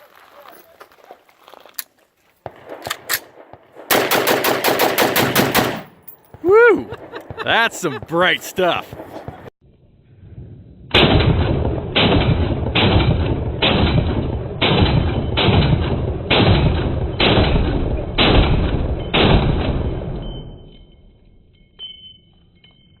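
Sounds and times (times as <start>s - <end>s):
rifle shots with rolling echo: 2.4s - 6.1s, 6.9s - 9.5s, 10.8s - 20.7s.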